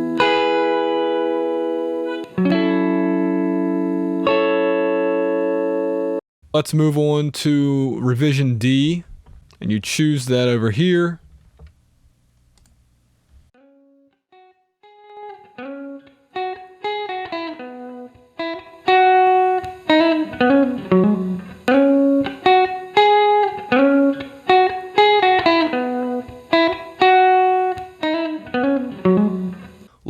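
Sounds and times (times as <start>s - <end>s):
clean electric guitar picked notes: 0.0s - 6.2s, 13.6s - 29.9s.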